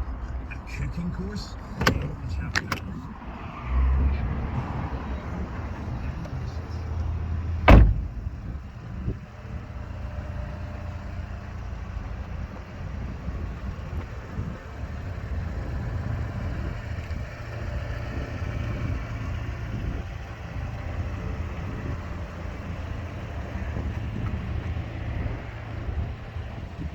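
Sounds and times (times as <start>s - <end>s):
car engine rumbling: 0.0s - 26.9s
sharp thump: 1.8s - 2.8s, 7.6s - 8.4s.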